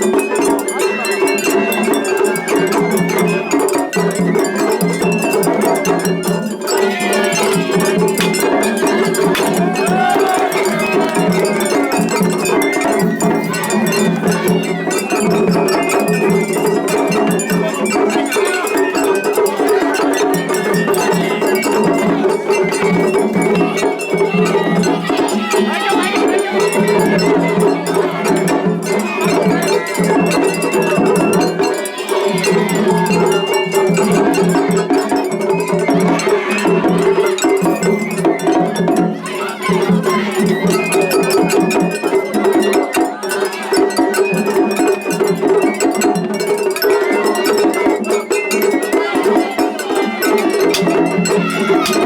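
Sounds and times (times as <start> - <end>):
festival bands playing: 0.0 - 52.0
hand gongs clanging: 6.8 - 15.6.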